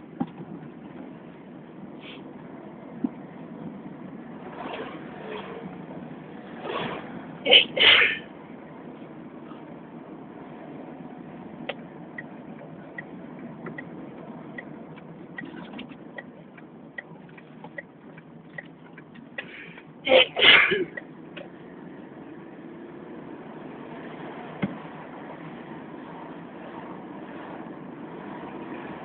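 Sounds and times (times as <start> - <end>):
person sneezing: 7.5 - 8.2, 20.1 - 21.0.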